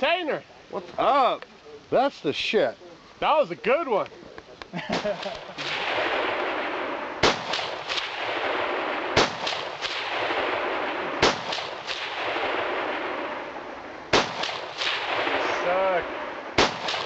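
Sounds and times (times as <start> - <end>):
background hiss: 0.0 - 17.0
gunshots with echoes: 4.9 - 17.0.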